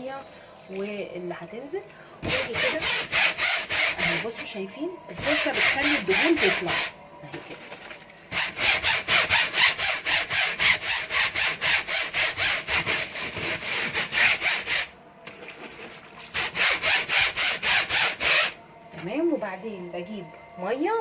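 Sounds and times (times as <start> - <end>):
brush scrubbing a mesh screen: 5.2 - 6.8.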